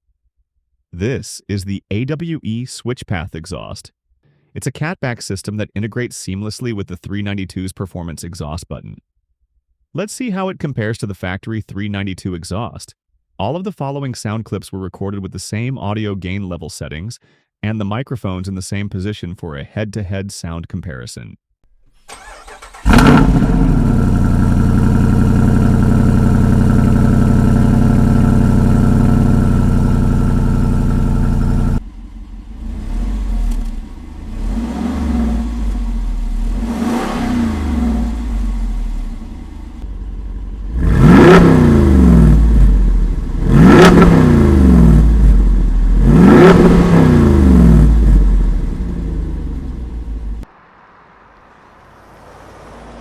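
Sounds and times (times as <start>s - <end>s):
car engine idling: 22.1s - 53.0s
engine revving: 22.1s - 53.0s.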